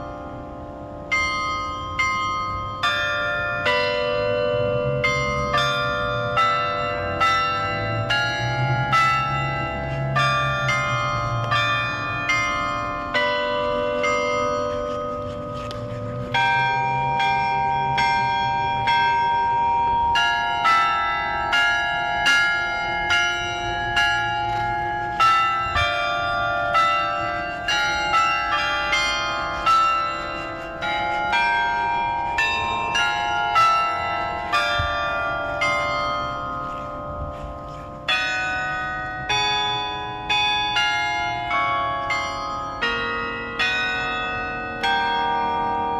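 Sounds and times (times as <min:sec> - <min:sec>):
carillon bells playing melody: 0:00.0 - 0:45.9.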